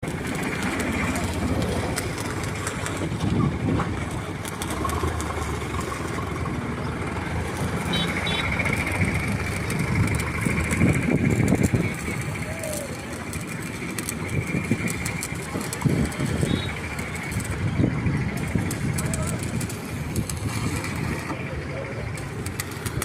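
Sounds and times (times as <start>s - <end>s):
excavator engine drone: 0.0s - 23.0s.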